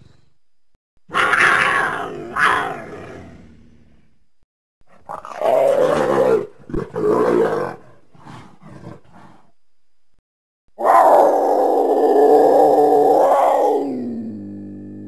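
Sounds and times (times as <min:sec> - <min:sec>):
creature growl: 0:10.8 - 0:15.0
long loud roar: 0:10.8 - 0:15.0.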